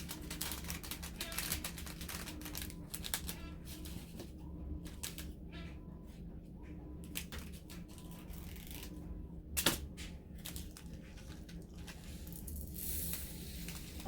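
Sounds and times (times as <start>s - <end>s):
small beads clicking and rattling: 10.4s - 14.0s.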